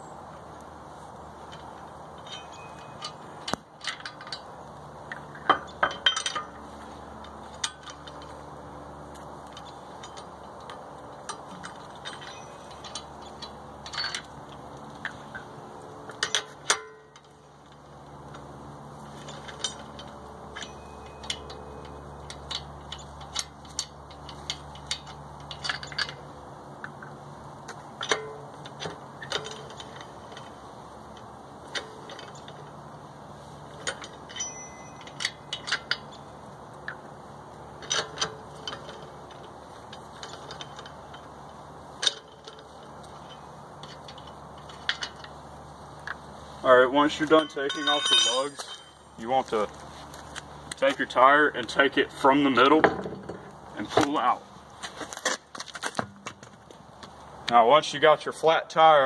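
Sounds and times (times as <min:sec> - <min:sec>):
lug wrench clicking on nuts: 0:33.7 - 0:37.1.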